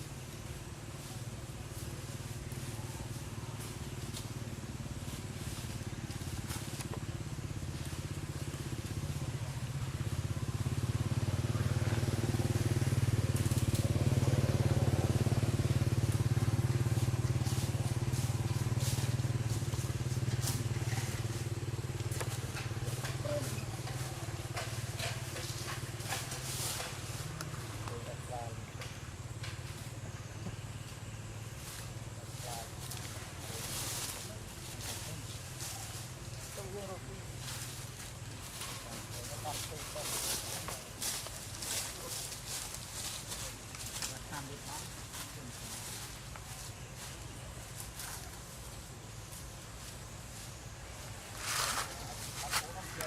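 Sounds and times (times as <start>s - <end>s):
vehicle engine humming: 0.0s - 53.0s.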